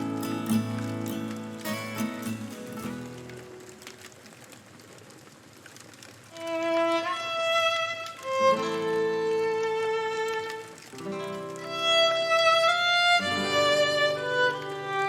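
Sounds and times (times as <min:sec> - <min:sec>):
campfire crackling: 0:00.0 - 0:15.0
slow violin melody: 0:06.3 - 0:15.0.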